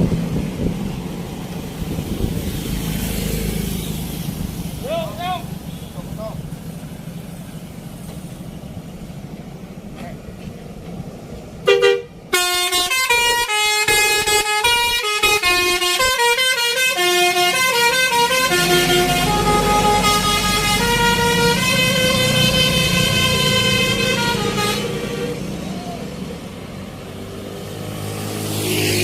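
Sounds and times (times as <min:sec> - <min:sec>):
engine and road noise: 0:00.0 - 0:29.0
horn blast: 0:11.6 - 0:25.4
bus melody horn: 0:11.6 - 0:25.5.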